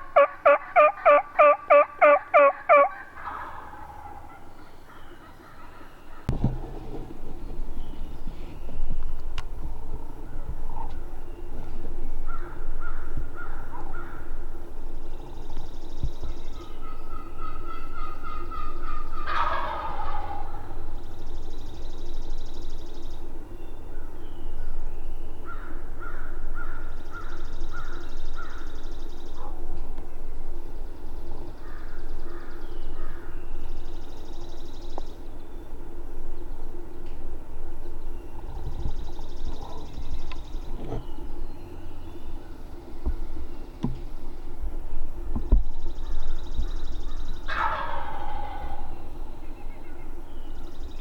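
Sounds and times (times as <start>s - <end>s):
turkey gobbling: 0.0s - 7.4s, 16.8s - 20.9s, 47.4s - 50.0s.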